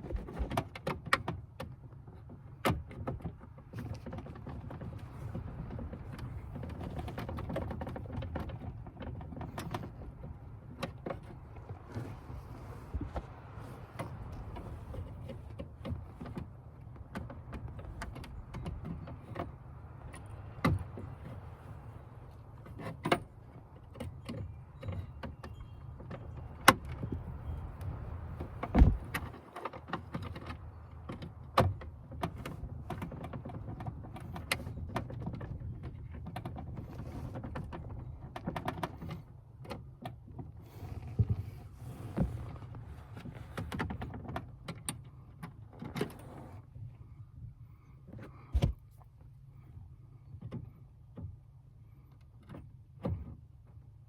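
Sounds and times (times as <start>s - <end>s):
low steady rumble: 3.8s - 29.3s.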